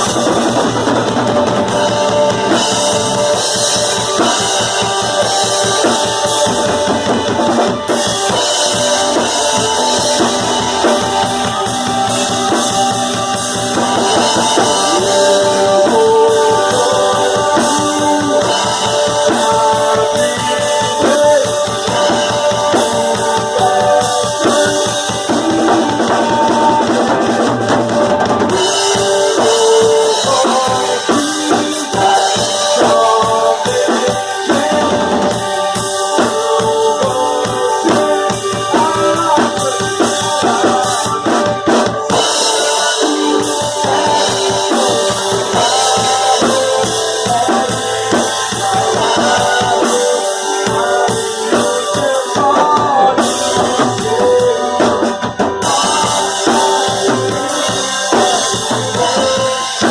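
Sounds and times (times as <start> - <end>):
drum kit beat: 0.0 - 59.9
live band playing: 0.0 - 59.9.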